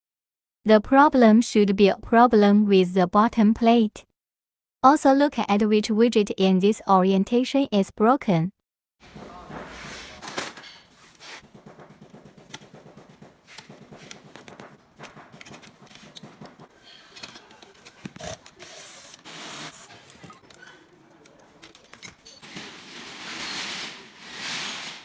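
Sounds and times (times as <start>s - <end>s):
tools clicking and scraping: 10.2s - 25.0s.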